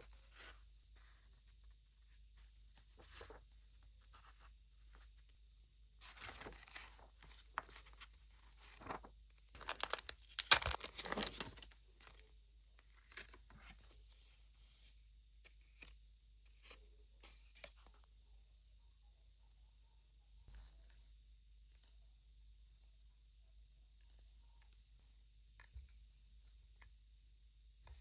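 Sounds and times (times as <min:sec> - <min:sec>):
packaging being torn open: 0:09.6 - 0:11.7.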